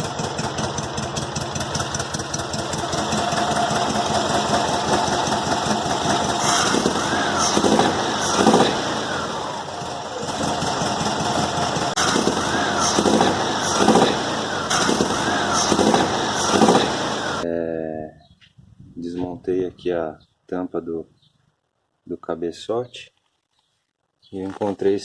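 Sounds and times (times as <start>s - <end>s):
air-cooled car engine roaring: 0.0s - 17.4s.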